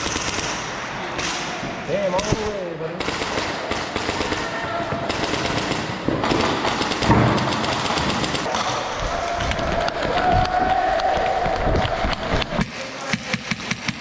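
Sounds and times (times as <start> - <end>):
airsoft guns firing bursts: 0.0 - 1.4, 3.0 - 8.6, 12.6 - 14.0.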